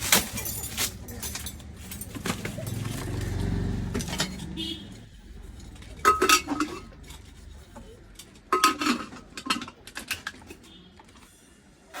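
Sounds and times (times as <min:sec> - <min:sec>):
metal cookware clanking: 0:00.0 - 0:04.7, 0:05.6 - 0:10.6.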